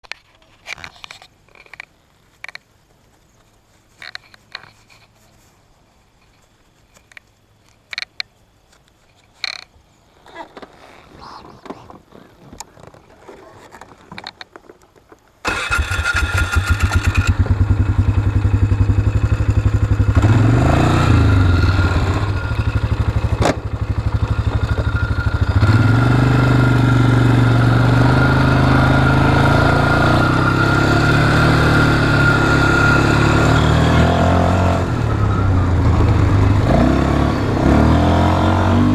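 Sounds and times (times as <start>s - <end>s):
quad bike engine running: 15.5s - 38.9s.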